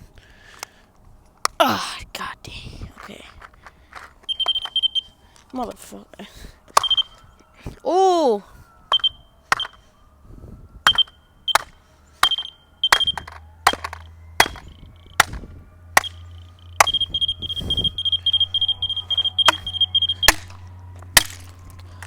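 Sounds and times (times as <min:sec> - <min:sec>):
smoke alarm high beeps: 0:04.3 - 0:05.2, 0:06.8 - 0:07.5, 0:08.9 - 0:10.0, 0:10.8 - 0:15.2, 0:16.0 - 0:20.7
smoke detector being struck: 0:06.8 - 0:07.1, 0:08.9 - 0:09.8, 0:10.9 - 0:15.4, 0:16.0 - 0:16.2, 0:16.8 - 0:20.6.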